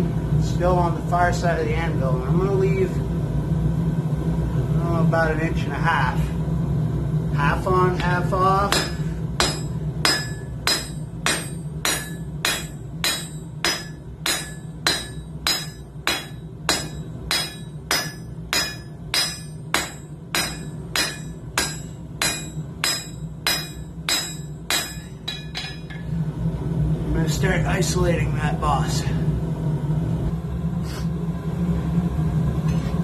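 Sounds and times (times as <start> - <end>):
low hum: 0.0 - 33.0
hammer striking steel on anvil: 8.7 - 26.1.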